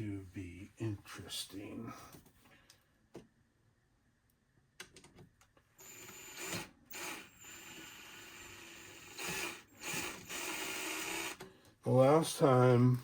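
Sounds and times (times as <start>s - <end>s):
power drill motor running: 5.8s - 11.4s.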